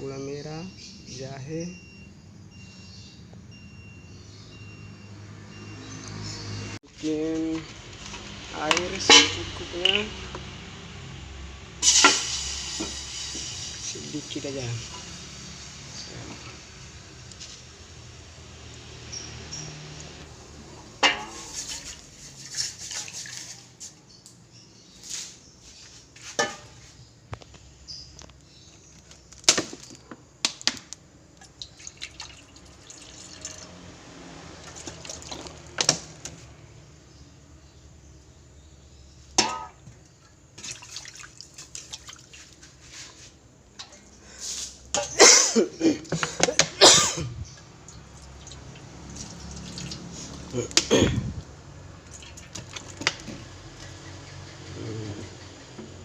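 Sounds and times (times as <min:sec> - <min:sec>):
water pouring and splashing: 0:21.1 - 0:23.8, 0:31.4 - 0:35.8, 0:40.6 - 0:43.2, 0:47.8 - 0:50.8, 0:52.0 - 0:54.0.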